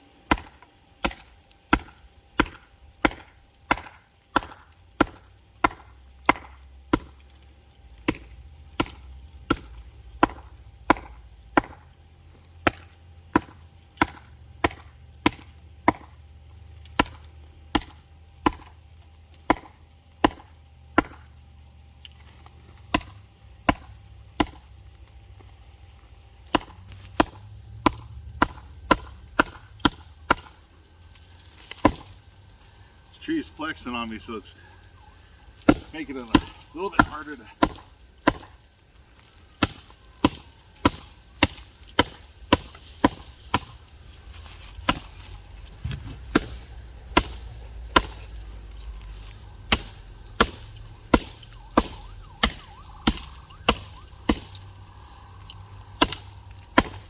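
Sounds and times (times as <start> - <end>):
blade chopping into wood: 0.3 - 7.2, 8.0 - 11.8, 12.6 - 16.2, 17.0 - 18.8, 19.4 - 21.3, 22.9 - 24.7, 26.5 - 30.6, 31.7 - 32.2, 35.6 - 38.6, 39.6 - 43.8, 44.8 - 45.2, 45.8 - 48.4, 49.6 - 54.6, 56.0 - 57.0.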